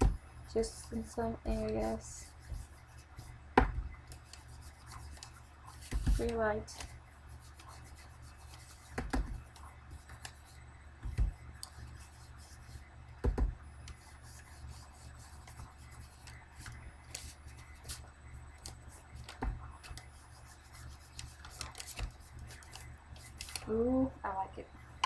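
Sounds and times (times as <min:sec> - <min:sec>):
steady low hum: 0:00.0 - 0:25.0
scratchy rubbing on cardstock: 0:02.0 - 0:03.4, 0:04.1 - 0:10.6, 0:11.7 - 0:12.9, 0:13.9 - 0:18.0, 0:18.6 - 0:23.6.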